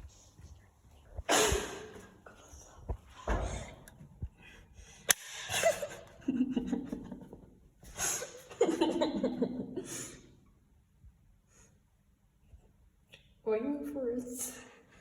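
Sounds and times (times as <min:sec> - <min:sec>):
sharp click: 0:05.1 - 0:05.4.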